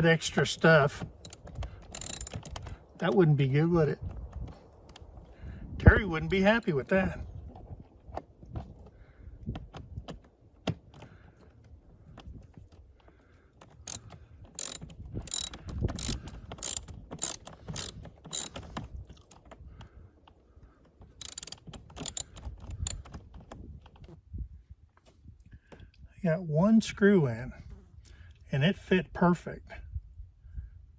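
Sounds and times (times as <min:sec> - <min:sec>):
ratcheting hand tool clicking: 0:01.1 - 0:02.7, 0:13.8 - 0:19.4, 0:21.2 - 0:23.2.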